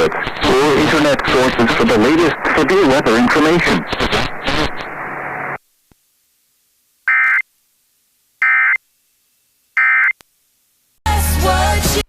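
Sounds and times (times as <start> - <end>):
harsh noisy burst with low hum: 0.0 - 5.6.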